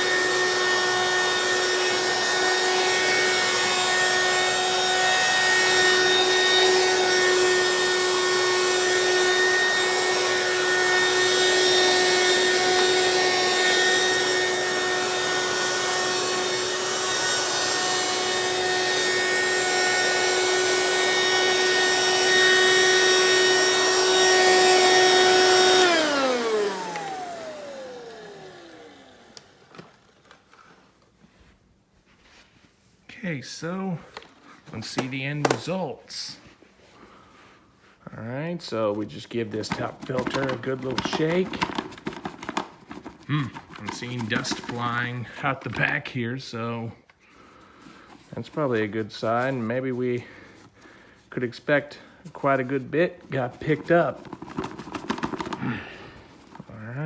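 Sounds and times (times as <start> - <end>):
vacuum cleaner motor whine: 0.0 - 30.9, 38.9 - 45.8, 53.6 - 57.0.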